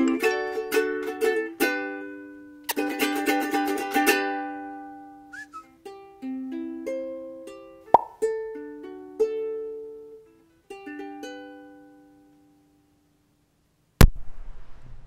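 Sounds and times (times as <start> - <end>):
plucked string instrument: 0.0 - 12.8.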